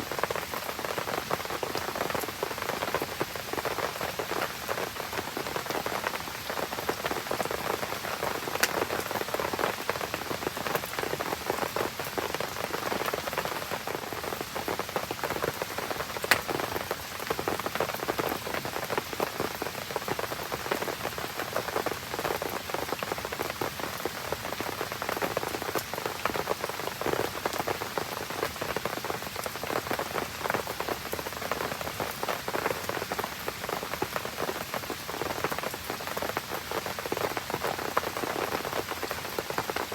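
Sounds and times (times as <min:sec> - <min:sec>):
rain pattering: 0:00.0 - 0:39.9
campfire popping: 0:08.4 - 0:09.0, 0:16.2 - 0:16.8.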